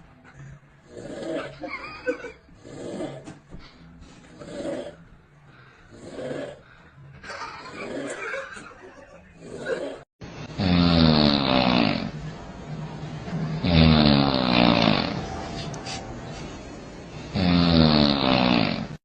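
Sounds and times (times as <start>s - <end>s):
loud drawn-out snores: 0.8s - 3.3s, 4.3s - 5.1s, 5.8s - 6.8s, 7.6s - 8.4s, 9.4s - 12.2s, 13.6s - 15.4s, 17.2s - 19.0s.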